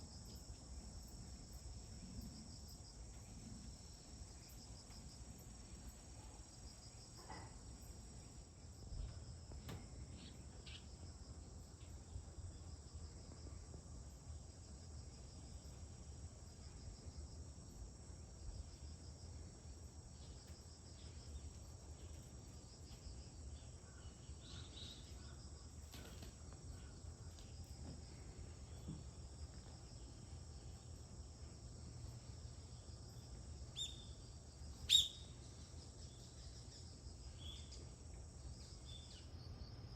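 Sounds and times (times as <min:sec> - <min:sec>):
crickets chirring: 0:00.0 - 0:39.9
bird chirp: 0:10.1 - 0:11.0, 0:33.7 - 0:34.2, 0:34.8 - 0:36.6.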